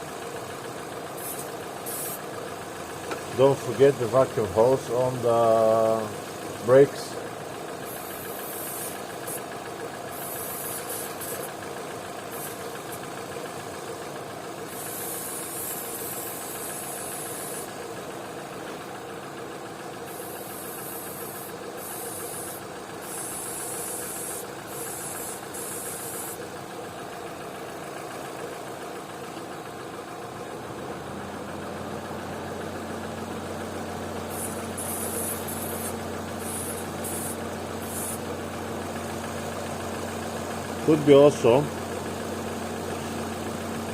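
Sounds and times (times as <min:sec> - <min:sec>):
car engine idling: 0:00.0 - 0:43.9
aerosol spray hissing: 0:01.1 - 0:02.3, 0:07.8 - 0:09.5, 0:10.1 - 0:11.6, 0:12.2 - 0:13.1, 0:14.7 - 0:17.8, 0:20.0 - 0:26.4, 0:34.3 - 0:38.3.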